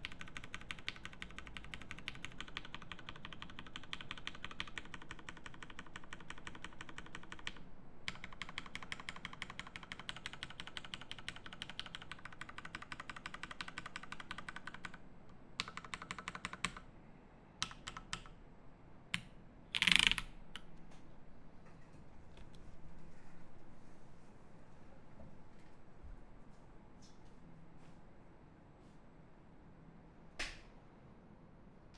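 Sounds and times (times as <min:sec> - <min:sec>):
mechanical keyboard typing: 0:00.0 - 0:15.0, 0:15.6 - 0:16.9, 0:17.6 - 0:18.4, 0:19.1 - 0:20.7.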